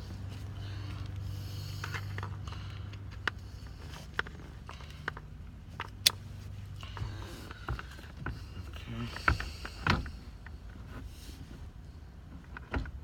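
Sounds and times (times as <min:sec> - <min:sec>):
steady low hum: 0:00.0 - 0:12.8.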